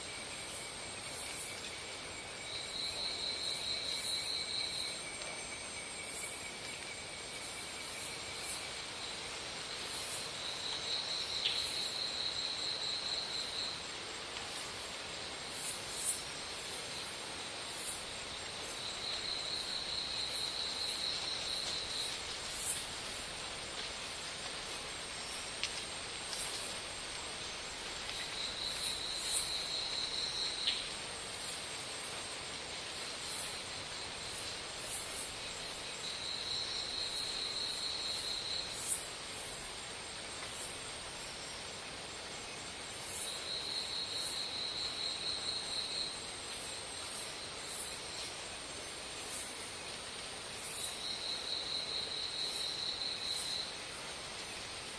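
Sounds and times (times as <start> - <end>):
outdoor background noise: 0.0 - 54.9
very high insect chirps: 9.7 - 25.6, 26.2 - 32.2.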